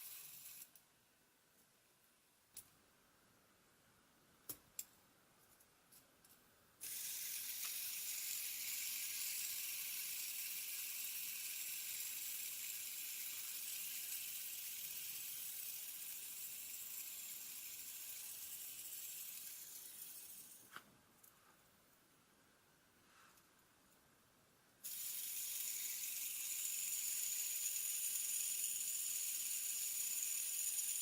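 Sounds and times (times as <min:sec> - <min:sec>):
fidget spinner whirring: 0:00.0 - 0:00.8, 0:06.8 - 0:20.7, 0:24.8 - 0:31.0.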